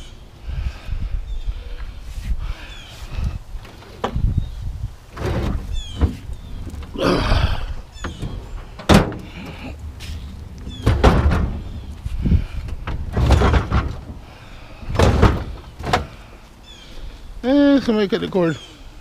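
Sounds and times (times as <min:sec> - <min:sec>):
scrap metal clattering and scraping: 0:05.1 - 0:07.0, 0:08.0 - 0:16.2.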